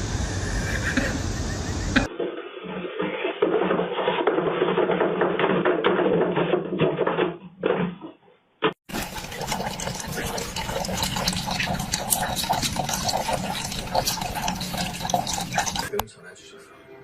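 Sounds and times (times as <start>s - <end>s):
running water: 8.9s - 16.0s.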